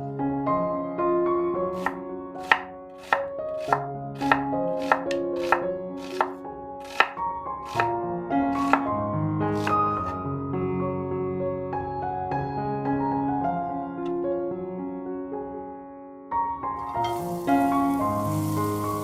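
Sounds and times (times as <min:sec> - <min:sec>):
knife chopping on cutting board: 0:01.8 - 0:07.9, 0:08.5 - 0:08.9, 0:09.5 - 0:10.2.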